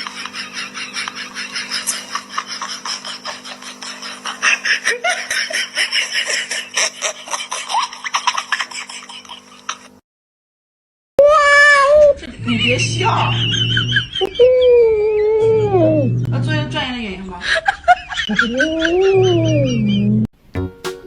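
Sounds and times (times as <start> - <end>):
person laughing hard: 0.0 - 10.0, 17.5 - 20.2.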